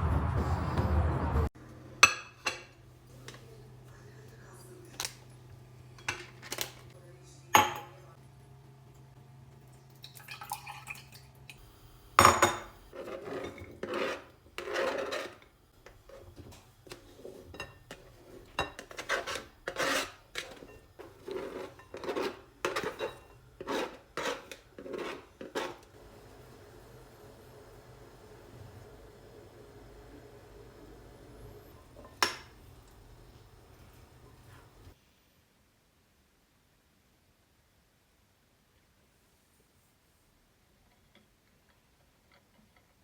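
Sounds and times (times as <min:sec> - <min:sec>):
utensils clinking on dishes: 0:04.6 - 0:06.9, 0:12.2 - 0:25.9
utensil scraping a dish: 0:12.9 - 0:26.0.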